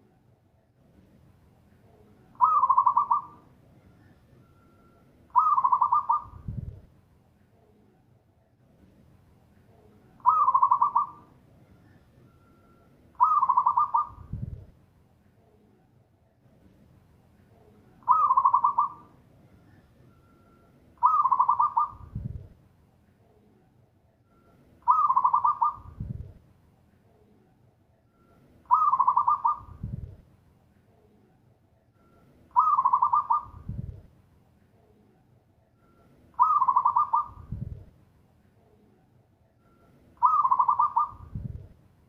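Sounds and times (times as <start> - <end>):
dove cooing: 2.4 - 3.5, 5.3 - 6.7, 10.2 - 11.3, 13.2 - 14.5, 18.0 - 19.1, 21.0 - 22.3, 24.8 - 26.2, 28.7 - 29.8, 32.5 - 33.8, 36.4 - 37.7, 40.2 - 41.6.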